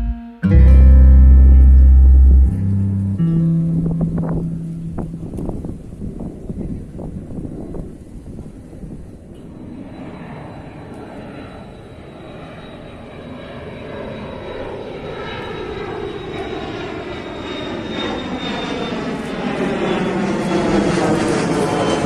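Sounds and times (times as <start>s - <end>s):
high engine whine: 0.0s - 22.0s
jet airliner flying overhead: 3.2s - 22.0s.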